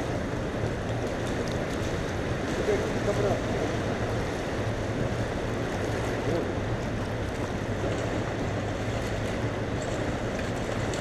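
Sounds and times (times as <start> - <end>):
low steady hum: 0.0 - 11.0
water rushing: 0.0 - 11.0.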